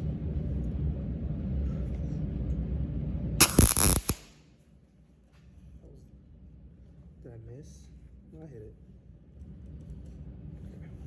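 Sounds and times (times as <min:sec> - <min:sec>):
welding arc crackling: 0:03.4 - 0:04.4.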